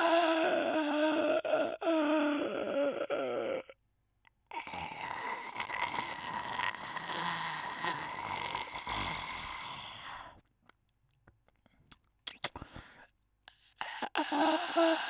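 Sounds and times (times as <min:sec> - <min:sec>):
person snoring: 0:00.0 - 0:03.7, 0:04.5 - 0:10.4, 0:13.8 - 0:15.0.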